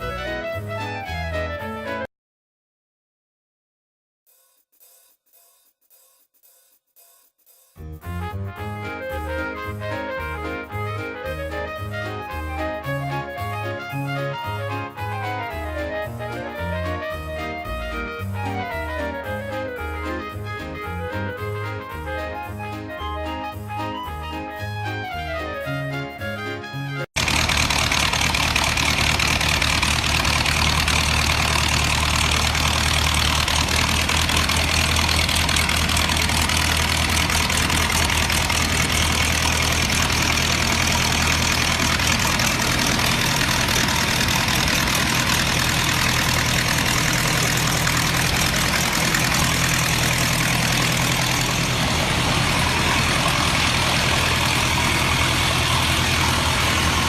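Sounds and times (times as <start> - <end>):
car engine idling: 27.2 - 57.0.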